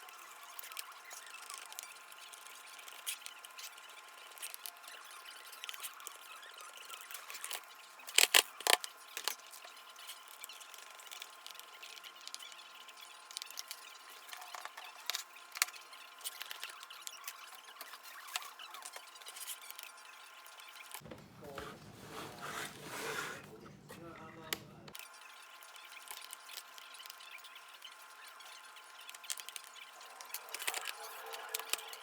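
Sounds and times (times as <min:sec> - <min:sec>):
screwdriver scratching and clicking: 0:07.0 - 0:10.1, 0:13.3 - 0:19.9, 0:29.0 - 0:32.0.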